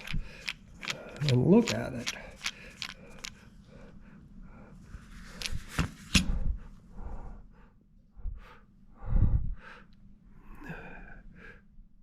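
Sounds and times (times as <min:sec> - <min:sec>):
small clicks and taps of hands: 0:00.0 - 0:03.4.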